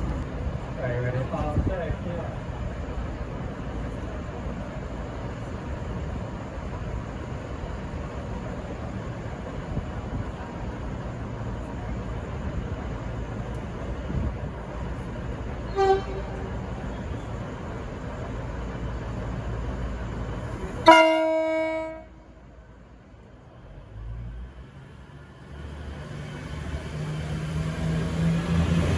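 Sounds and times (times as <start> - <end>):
diesel railcar rumble: 0.0 - 28.9
train horn: 15.7 - 16.8, 20.8 - 22.4.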